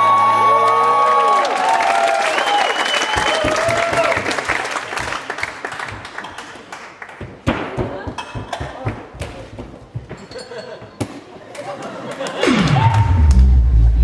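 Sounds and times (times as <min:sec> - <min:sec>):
audience applauding and cheering: 0:00.0 - 0:07.2, 0:12.1 - 0:14.0.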